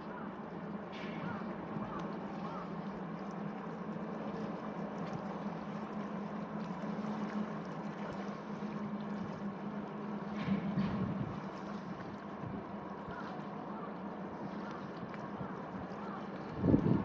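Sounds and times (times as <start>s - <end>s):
boat engine running: 0.0s - 17.0s.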